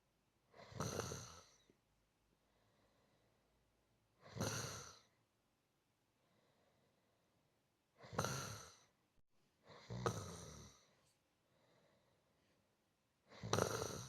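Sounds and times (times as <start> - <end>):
person snoring softly: 0.5 - 1.8, 4.2 - 5.2, 8.0 - 9.0, 9.6 - 11.0, 13.2 - 14.0
faint breathing: 2.4 - 3.6, 6.1 - 7.5, 10.7 - 12.7.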